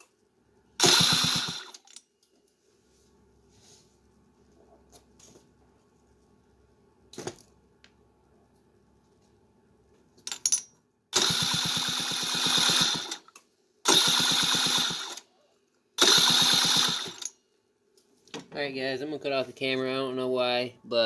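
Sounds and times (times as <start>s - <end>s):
moped starter cranking engine: 0.8s - 1.9s, 11.2s - 13.3s, 13.9s - 15.3s, 16.0s - 17.3s.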